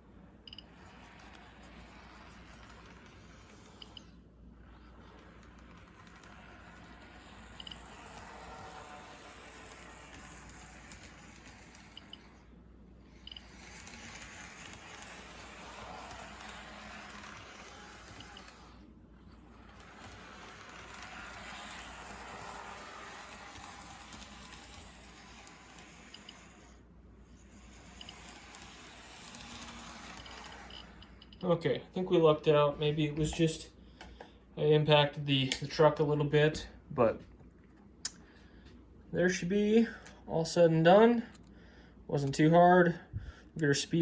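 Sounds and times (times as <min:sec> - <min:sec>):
model train motor whir: 0:00.5 - 0:12.5, 0:13.1 - 0:31.4.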